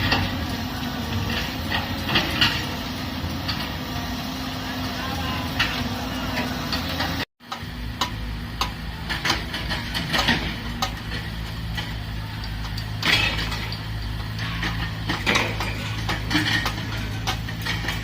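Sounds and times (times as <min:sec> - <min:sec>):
diesel excavator running: 0:00.0 - 0:18.0
metallic clicks and knocks: 0:06.7 - 0:18.0.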